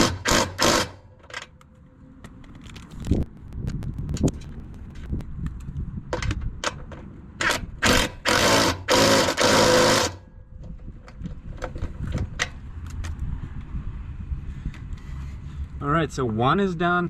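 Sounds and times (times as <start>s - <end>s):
power tool driving a nut: 0.0s - 1.5s, 7.4s - 10.2s.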